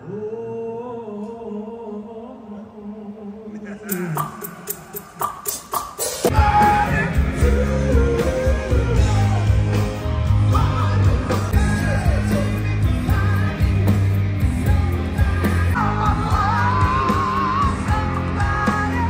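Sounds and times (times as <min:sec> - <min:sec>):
person singing: 0:00.0 - 0:05.2, 0:06.2 - 0:19.0
rock band playing live: 0:05.5 - 0:19.0.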